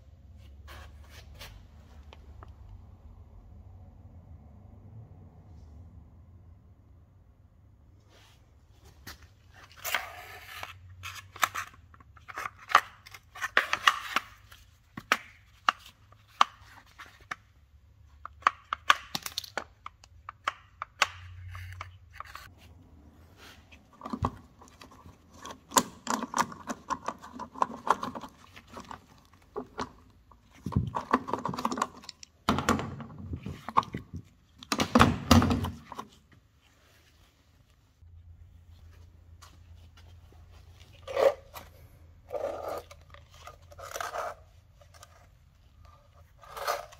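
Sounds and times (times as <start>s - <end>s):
tearing and scraping: 46.2s - 46.9s.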